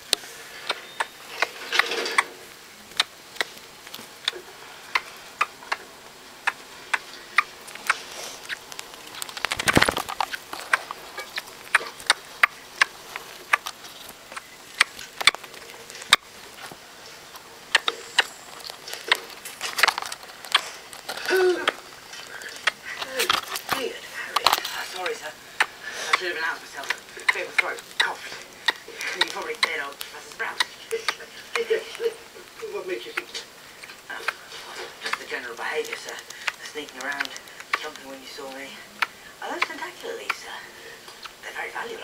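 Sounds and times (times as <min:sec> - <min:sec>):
rustling: 0:00.0 - 0:42.0
rat clicking: 0:02.9 - 0:16.7, 0:17.3 - 0:42.0.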